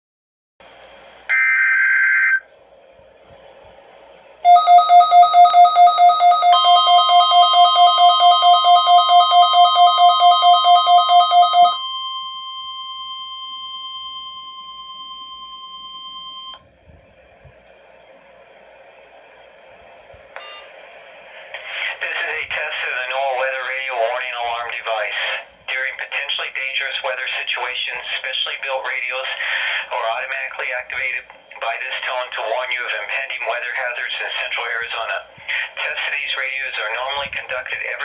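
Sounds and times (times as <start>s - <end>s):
digital header tones: 1.3s - 2.4s
rapid alarm beeping: 1.3s - 2.5s, 4.4s - 16.6s
steady warning alarm tone: 1.3s - 2.5s, 4.4s - 16.7s
radio hiss: 19.0s - 38.0s.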